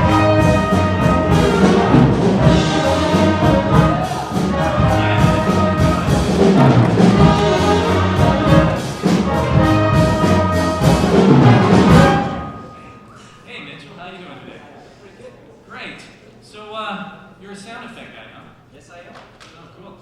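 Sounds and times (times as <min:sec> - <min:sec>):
orchestral brass music: 0:00.0 - 0:13.1.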